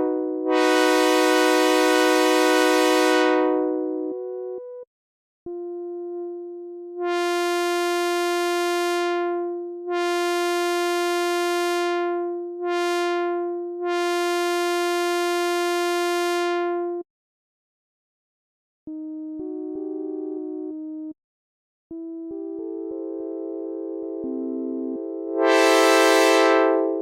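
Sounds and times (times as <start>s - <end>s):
synthesized train horn blasts: 0.0s - 3.9s, 9.9s - 10.6s, 11.2s - 16.8s, 25.4s - 27.0s.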